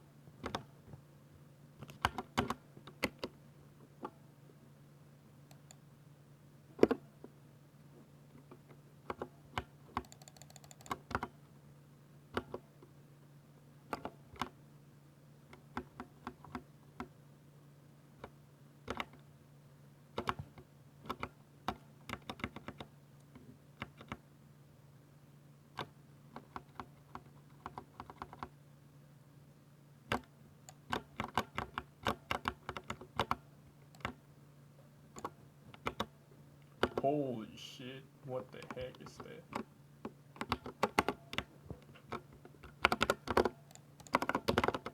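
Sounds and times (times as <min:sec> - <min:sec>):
mechanical keyboard typing: 0:09.1 - 0:11.3, 0:30.1 - 0:34.2, 0:42.1 - 0:44.9
steady low hum: 0:33.3 - 0:40.5.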